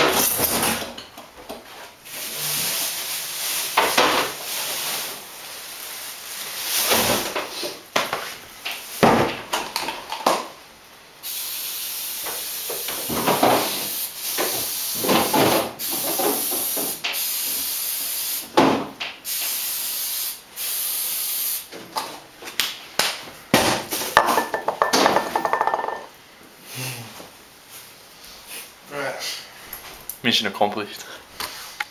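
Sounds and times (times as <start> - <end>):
spray hissing: 11.2 - 18.4
knocks and clatter: 23.6 - 26.1.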